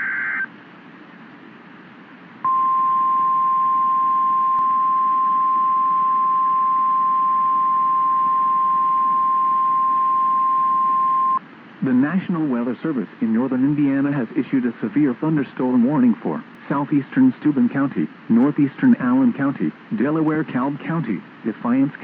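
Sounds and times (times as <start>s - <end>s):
faint receiver hiss: 4.4s - 22.0s.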